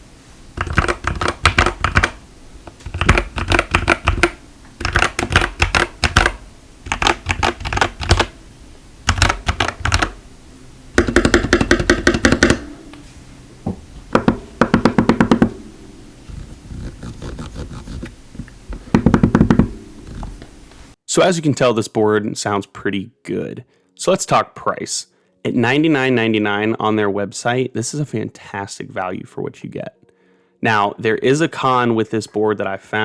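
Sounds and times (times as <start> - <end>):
mechanical keyboard key clacks: 0.6 - 8.3, 9.1 - 10.2, 11.0 - 12.6.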